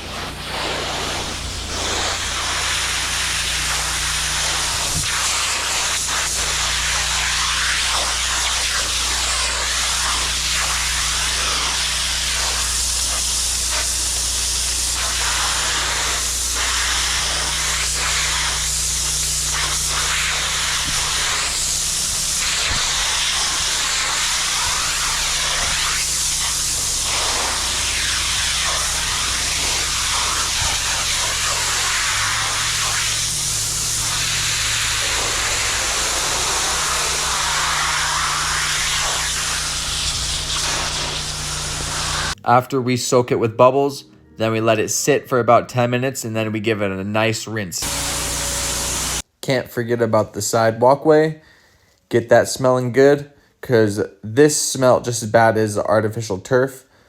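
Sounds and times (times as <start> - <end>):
pressure washer spraying hiss: 0.0 - 42.4, 47.8 - 49.2
steady low hum: 15.0 - 42.4.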